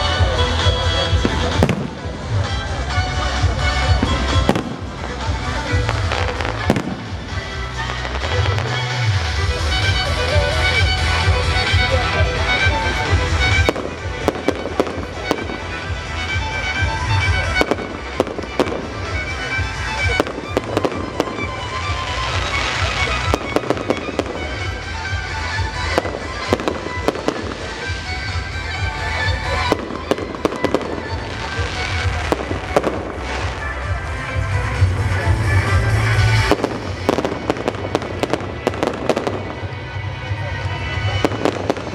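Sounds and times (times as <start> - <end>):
music with heavy bass beat: 0.0 - 39.4
fireworks bangs and crackles: 0.0 - 41.9.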